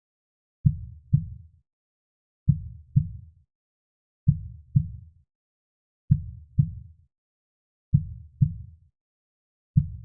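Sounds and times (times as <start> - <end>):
slow heartbeat: 0.6 - 1.4, 2.5 - 3.3, 4.3 - 5.0, 6.1 - 6.9, 7.9 - 8.7, 9.8 - 10.0.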